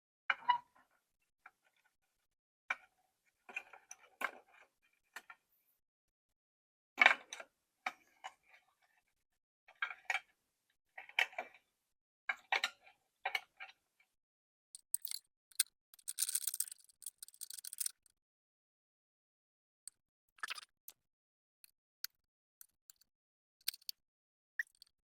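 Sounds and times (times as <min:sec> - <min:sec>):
scratchy ticking of screws tightening: 0:14.8 - 0:18.1, 0:23.6 - 0:24.0
screwdriver and metal parts clicking: 0:14.8 - 0:18.1, 0:23.6 - 0:24.0.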